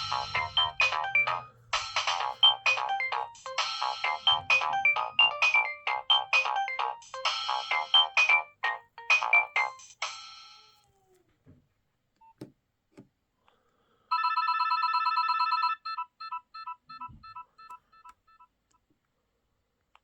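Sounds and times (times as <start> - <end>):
electronic phone ringtone beeps: 0.0 - 10.8, 14.1 - 18.5.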